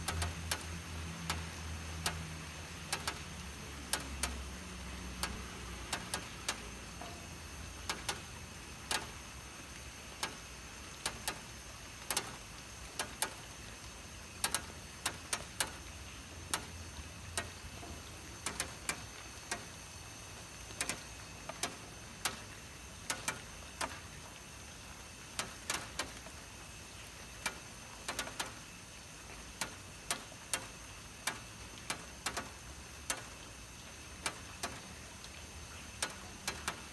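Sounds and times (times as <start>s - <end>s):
rain hissing: 0.0s - 36.9s
raindrops tapping on a roof: 0.0s - 36.9s.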